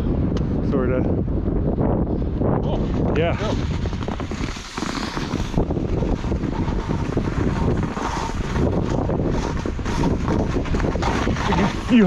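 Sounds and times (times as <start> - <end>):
wind buffeting microphone: 0.0 - 12.0
skis scraping through wet snow: 3.4 - 12.0.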